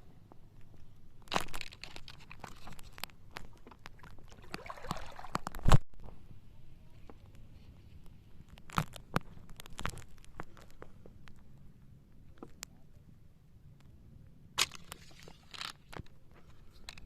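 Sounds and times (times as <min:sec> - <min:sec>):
splashing through shallow water: 0:04.0 - 0:05.8.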